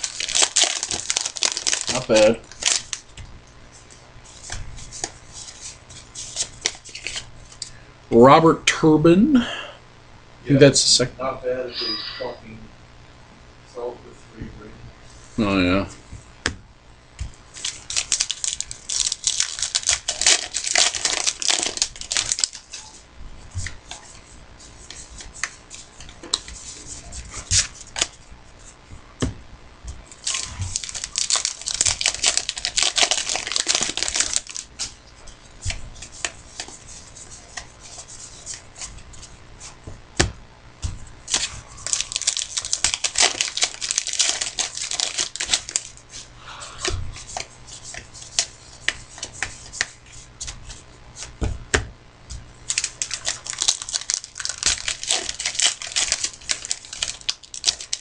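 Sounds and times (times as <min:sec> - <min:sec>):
wrappers tearing and crinkling: 0:00.0 - 0:03.1, 0:17.5 - 0:23.0, 0:30.1 - 0:35.0, 0:41.3 - 0:46.3, 0:52.7 - 0:58.0.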